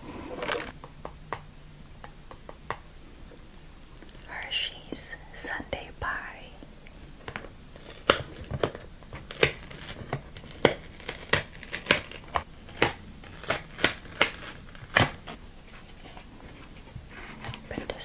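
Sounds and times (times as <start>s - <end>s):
packaging crinkling and tearing: 6.9s - 15.4s.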